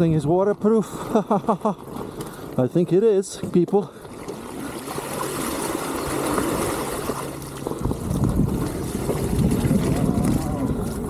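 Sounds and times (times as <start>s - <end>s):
water rushing and splashing: 3.8s - 11.0s
low rumble: 5.9s - 11.0s.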